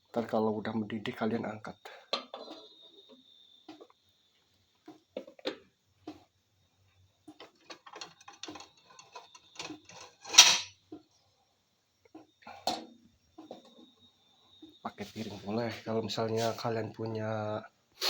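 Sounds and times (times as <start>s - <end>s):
kitchenware clicking and clinking: 7.4s - 10.8s.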